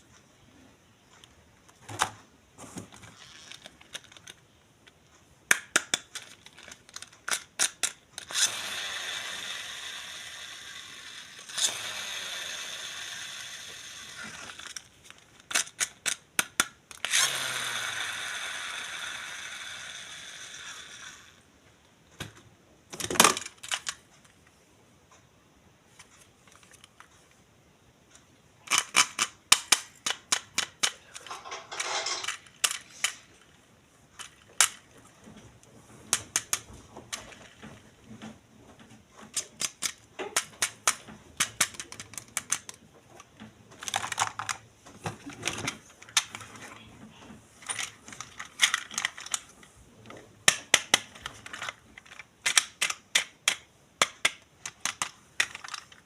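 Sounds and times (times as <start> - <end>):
plastic clicks and snaps: 28.1 - 31.3, 39.3 - 44.6, 50.1 - 56.0.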